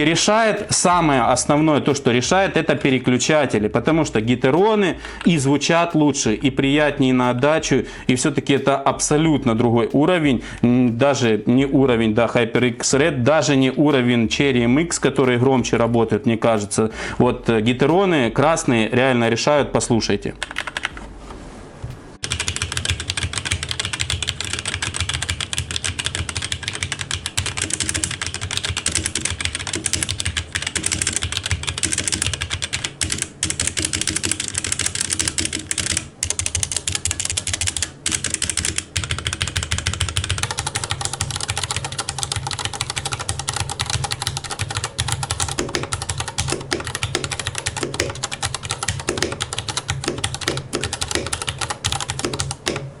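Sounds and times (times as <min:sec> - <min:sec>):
mechanical keyboard typing: 0:00.0 - 0:06.2, 0:20.3 - 0:21.0, 0:22.2 - 0:52.9.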